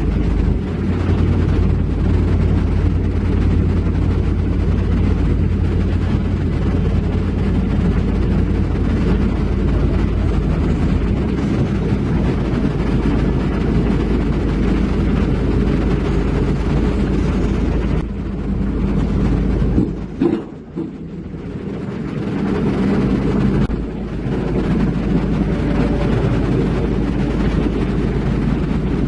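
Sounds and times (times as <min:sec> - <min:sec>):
heavy diesel engine running: 0:00.0 - 0:29.0.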